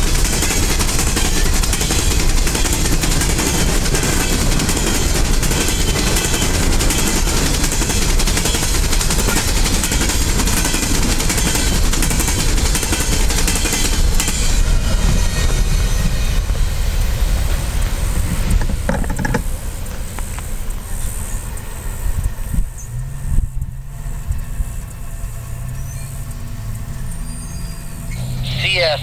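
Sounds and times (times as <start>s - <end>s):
train cars rumbling on rails: 0.0s - 29.0s
wheel clatter: 17.9s - 20.5s.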